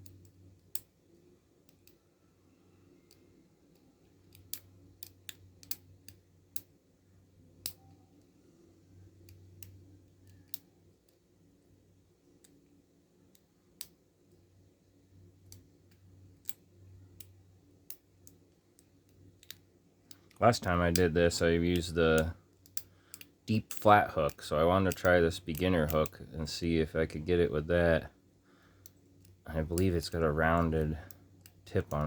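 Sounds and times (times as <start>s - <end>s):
lock pick clicking on pins: 0.0s - 2.0s, 2.9s - 6.8s, 7.5s - 11.2s, 15.4s - 26.3s, 28.8s - 32.0s.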